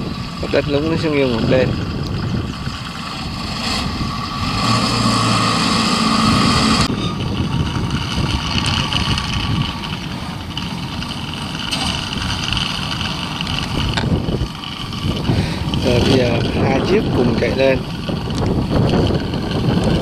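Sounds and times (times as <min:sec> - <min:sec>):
harvester engines droning: 0:00.0 - 0:20.0
wind buffeting microphone: 0:00.0 - 0:20.0
held tone: 0:05.0 - 0:09.8.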